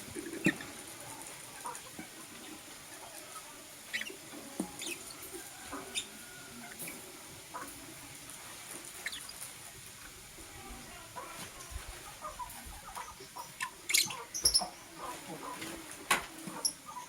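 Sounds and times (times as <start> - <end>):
birds chirping: 2.9 - 7.8, 8.8 - 9.5, 10.9 - 17.0.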